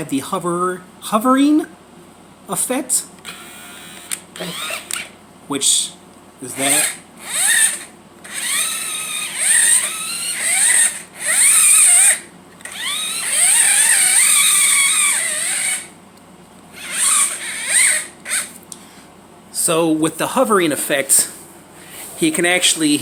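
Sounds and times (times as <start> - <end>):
toy car electric motor whining: 3.3 - 5.2, 6.5 - 15.9, 16.7 - 18.6.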